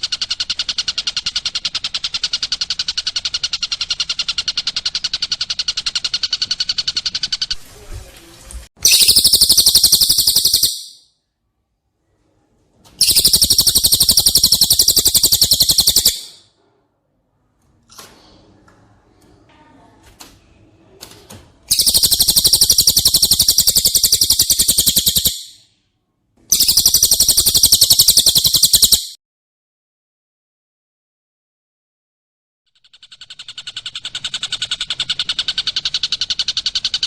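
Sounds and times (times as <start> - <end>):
faint bird chirps and clicks: 0.0 - 7.5, 8.8 - 11.0, 13.0 - 16.4, 21.7 - 25.7, 26.5 - 29.2, 32.7 - 37.0
songbird rapid trills: 8.8 - 11.0, 13.0 - 16.4, 21.7 - 25.6, 26.5 - 29.2.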